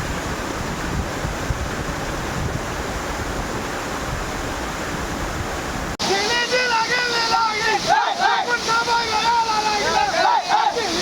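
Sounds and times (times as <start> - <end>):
wind buffeting microphone: 0.0 - 6.0
waterfall rushing: 0.0 - 11.0.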